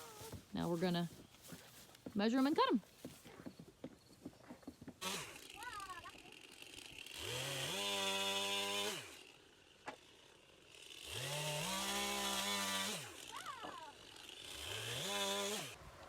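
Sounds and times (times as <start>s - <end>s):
electric saw cutting boards: 4.9s - 16.0s.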